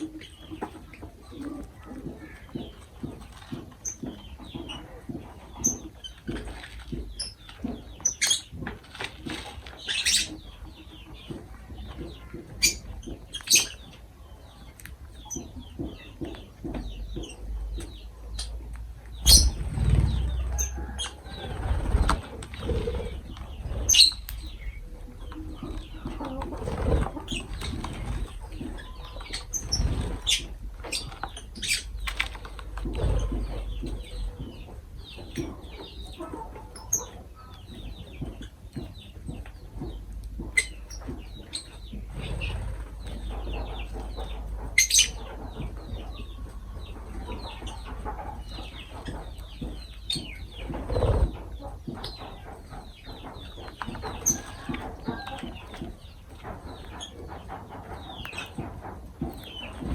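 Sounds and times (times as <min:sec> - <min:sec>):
wings flapping and rustling: 0:00.0 - 0:13.9, 0:19.2 - 0:36.3, 0:38.1 - 0:46.1, 0:47.2 - 0:59.9
birds chirping sharply: 0:09.7 - 0:38.4.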